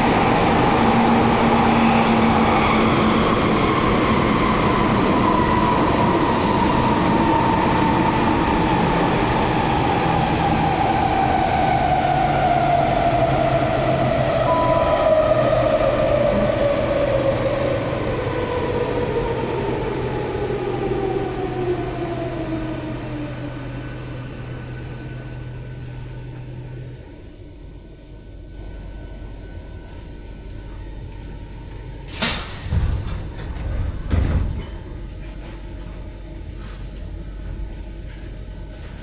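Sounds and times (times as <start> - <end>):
short beep: 14.5 - 15.6.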